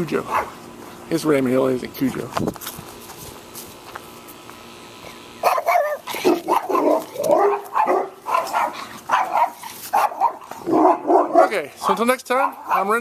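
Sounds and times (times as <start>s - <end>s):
dog barking: 0.3s - 0.6s, 5.4s - 13.0s.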